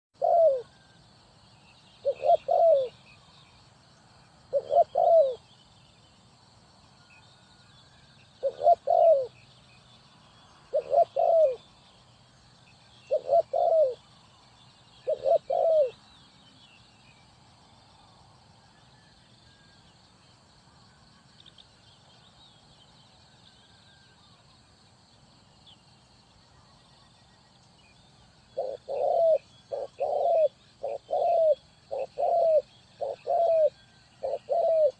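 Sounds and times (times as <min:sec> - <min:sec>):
dove cooing: 0:00.1 - 0:00.8, 0:02.0 - 0:03.2, 0:04.5 - 0:05.5, 0:08.4 - 0:09.4, 0:10.6 - 0:11.7, 0:13.1 - 0:14.0, 0:15.0 - 0:16.1, 0:28.4 - 0:34.9
small birds chirping: 0:00.1 - 0:18.1, 0:25.6 - 0:34.9.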